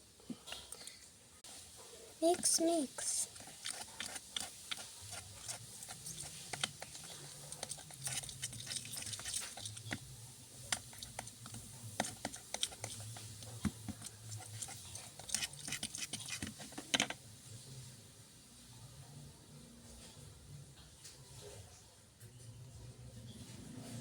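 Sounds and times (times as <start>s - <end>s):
stirrer clicking against cup: 3.0s - 10.1s, 10.7s - 17.2s.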